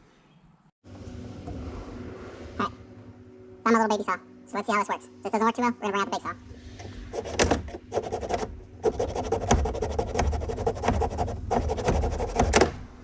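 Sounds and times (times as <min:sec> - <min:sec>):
handsaw rasping: 0:06.6 - 0:12.8.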